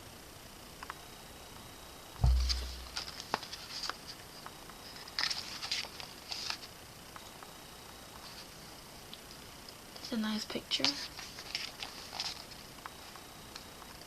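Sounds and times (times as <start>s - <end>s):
thump: 2.2s - 2.9s
paper and packaging rustling: 2.2s - 4.2s, 4.9s - 6.7s, 10.7s - 12.6s.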